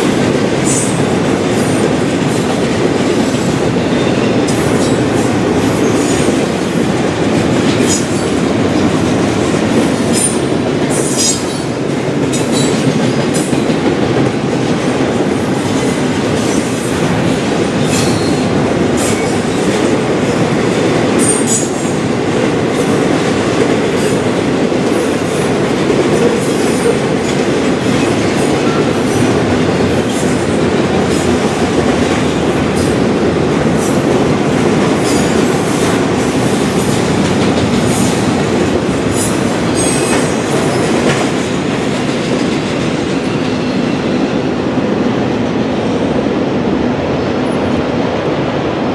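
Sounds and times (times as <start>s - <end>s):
freight train rumbling on rails: 0.0s - 48.9s.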